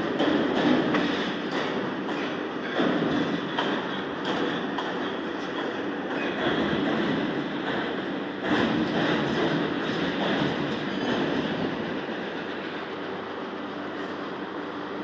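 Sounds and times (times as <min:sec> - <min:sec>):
steady machinery noise: 0:00.0 - 0:15.0.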